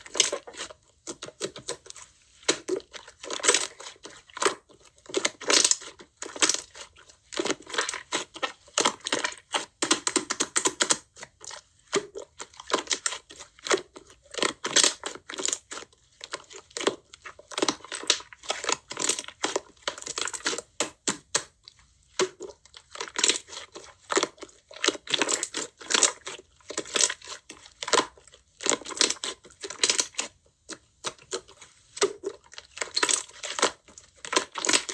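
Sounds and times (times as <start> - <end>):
slime squished by hand: 0.0 - 34.9.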